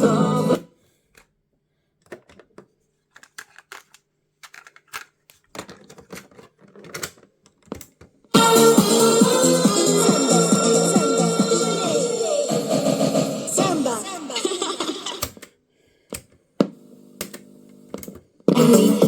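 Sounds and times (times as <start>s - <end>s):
music: 0.0s - 0.6s, 8.4s - 15.2s, 18.5s - 19.0s
plastic clicks of boombox handling: 2.0s - 8.2s.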